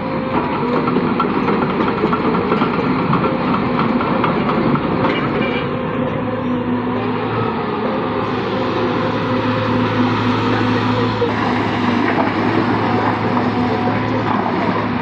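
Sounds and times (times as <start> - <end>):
excavator diesel engine running: 0.0 - 15.0.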